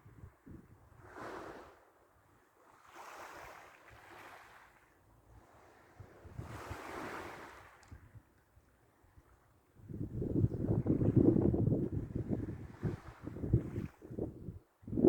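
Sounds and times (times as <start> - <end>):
waves washing on shore: 1.0 - 1.9, 2.7 - 4.8, 5.4 - 8.0.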